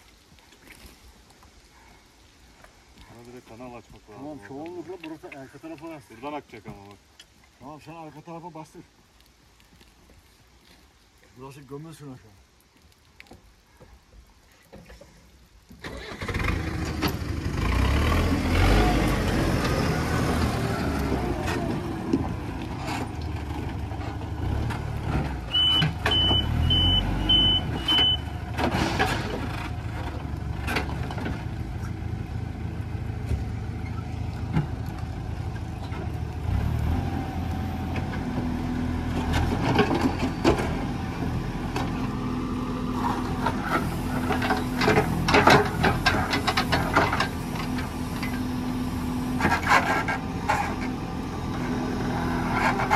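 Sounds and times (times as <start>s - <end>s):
earth-moving machine engine: 15.8s - 52.9s
back-up alarm beeps: 25.5s - 28.3s.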